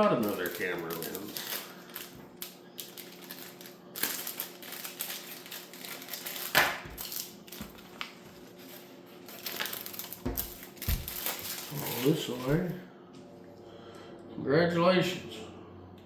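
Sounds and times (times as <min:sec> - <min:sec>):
rustling of tools packed in bag: 0:00.2 - 0:12.8.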